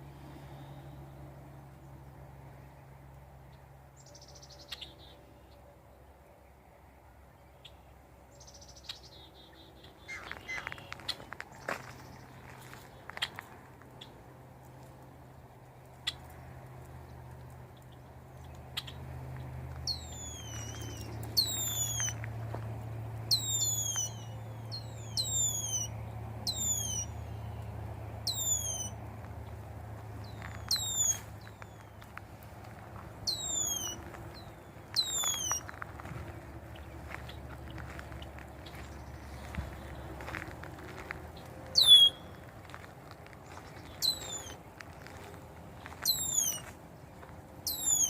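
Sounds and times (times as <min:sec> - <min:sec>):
bird whistled calls: 0:19.9 - 0:22.2, 0:23.3 - 0:27.2, 0:28.3 - 0:29.0, 0:30.4 - 0:31.8, 0:33.3 - 0:34.0, 0:35.0 - 0:35.7, 0:41.8 - 0:42.4, 0:44.0 - 0:44.6, 0:46.0 - 0:46.7, 0:47.6 - 0:48.0.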